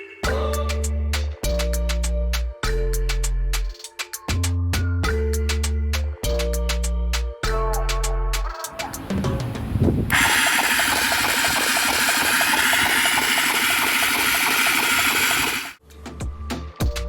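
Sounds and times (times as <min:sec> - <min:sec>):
tool ratcheting rattle: 0:10.1 - 0:15.8.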